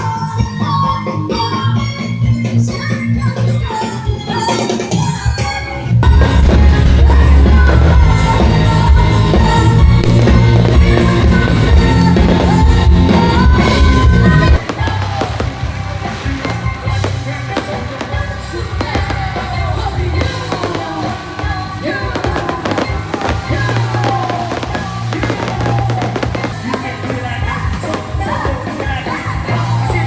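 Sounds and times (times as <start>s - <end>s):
fireworks bursting and crackling: 6.2s - 30.0s
loud music with steady beat: 14.6s - 30.0s.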